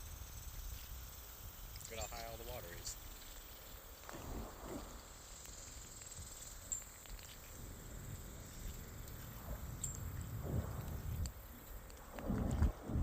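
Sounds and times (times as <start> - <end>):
high insect buzz: 0.0 - 12.5
wind rumbling on microphone: 3.8 - 13.0.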